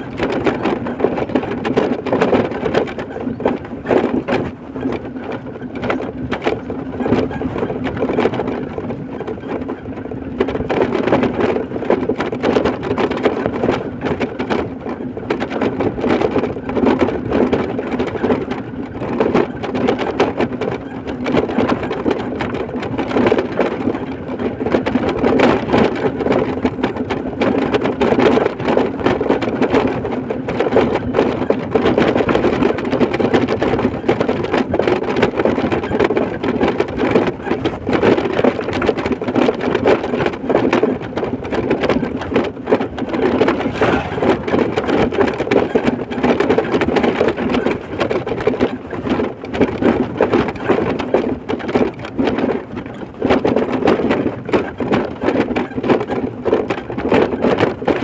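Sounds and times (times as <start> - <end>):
fast rattling clatter: 0.0 - 58.0
vehicle road and engine noise: 42.6 - 47.8.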